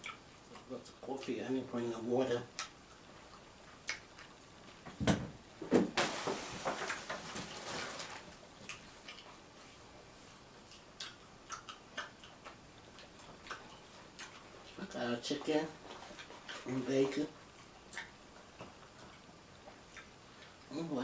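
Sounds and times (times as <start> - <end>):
paper rustling: 6.0 - 8.4.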